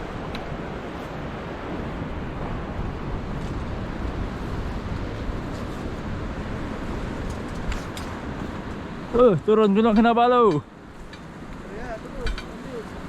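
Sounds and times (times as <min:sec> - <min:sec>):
wind on microphone: 0:00.0 - 0:09.2
ocean surf: 0:00.0 - 0:13.0.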